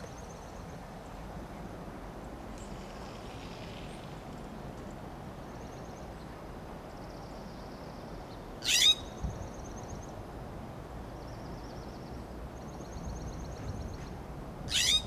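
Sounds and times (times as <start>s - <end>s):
faint high bird trills: 8.6s - 9.1s, 14.7s - 15.0s.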